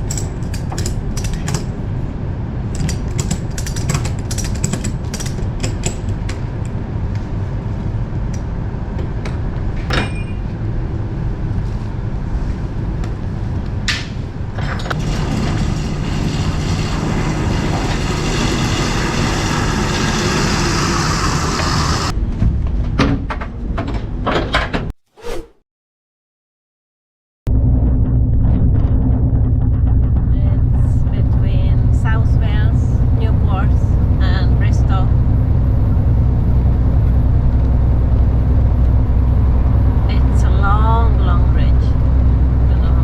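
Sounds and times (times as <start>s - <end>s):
lorry engine rumble: 5.9s - 22.2s, 27.5s - 43.0s
rushing hiss: 15.3s - 22.1s.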